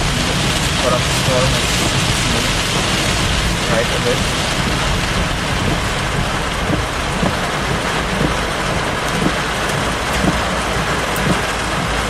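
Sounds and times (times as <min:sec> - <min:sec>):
heavy rain drumming on car roof: 0:00.0 - 0:12.0.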